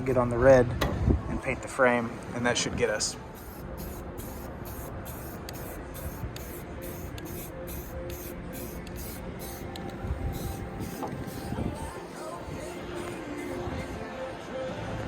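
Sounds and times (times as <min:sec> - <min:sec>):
spray paint can hissing: 0:03.3 - 0:14.0.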